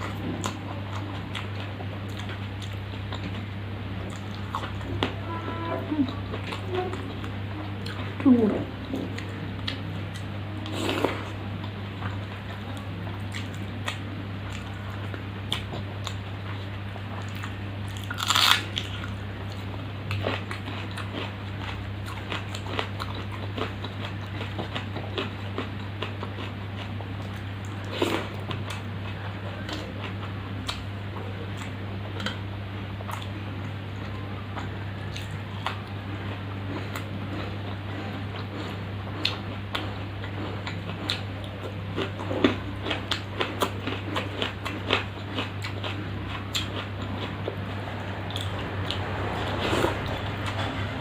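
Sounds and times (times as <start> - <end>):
chewing and biting: 17.1 - 32.4, 34.5 - 51.0
low hum: 45.1 - 51.0.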